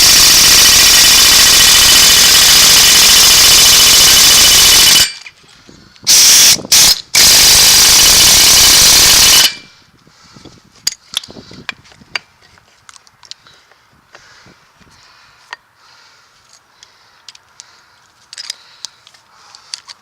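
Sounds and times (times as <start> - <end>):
power tool hammering: 0.0 - 5.2, 6.1 - 9.6.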